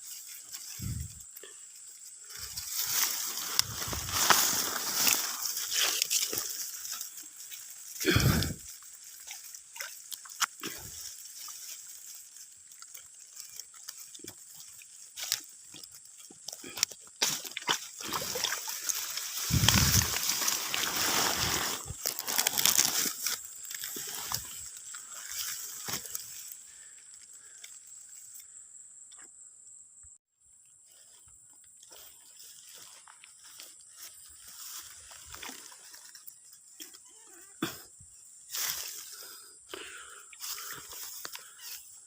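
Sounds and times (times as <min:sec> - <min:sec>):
water sloshing and splashing: 0:16.8 - 0:26.2.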